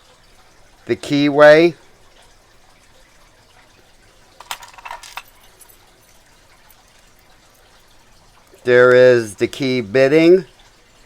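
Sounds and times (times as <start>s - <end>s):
padlock and key rattling: 4.4s - 7.7s.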